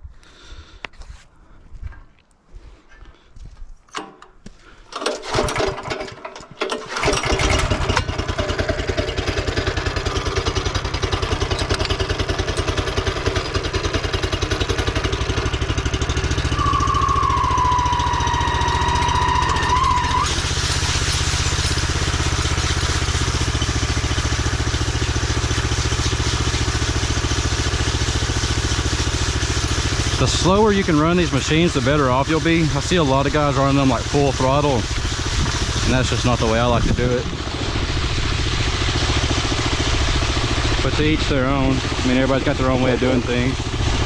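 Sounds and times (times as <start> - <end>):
power trowel engine running: 4.7 - 44.0
high whistling tone: 16.3 - 20.8.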